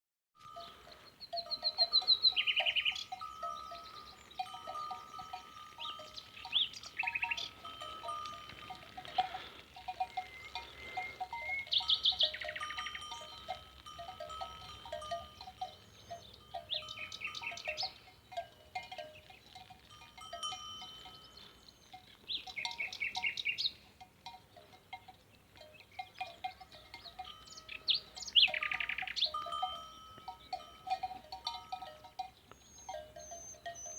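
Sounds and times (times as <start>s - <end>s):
birds calling: 0.4s - 33.9s
bird trilling: 1.3s - 13.7s, 26.9s - 29.4s, 32.6s - 33.9s.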